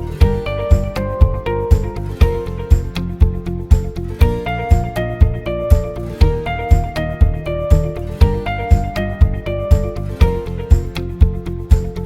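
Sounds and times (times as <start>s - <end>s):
background music with steady beat: 0.0s - 12.0s.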